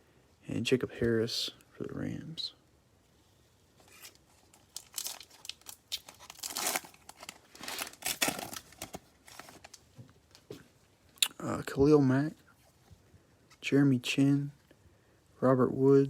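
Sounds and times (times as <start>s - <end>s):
plastic wrapper crinkling and tearing: 3.8s - 9.9s.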